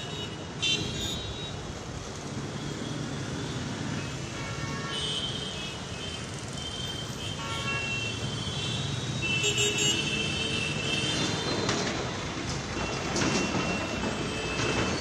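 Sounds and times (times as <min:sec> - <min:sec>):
busy street traffic: 0:00.0 - 0:15.0
vehicle horns honking: 0:07.2 - 0:11.2.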